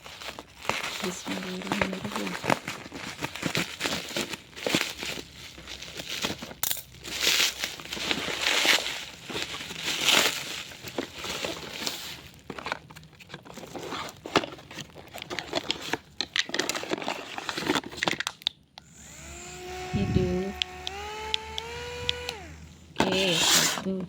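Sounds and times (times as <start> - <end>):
plastic packaging crinkling: 0.0 - 18.6.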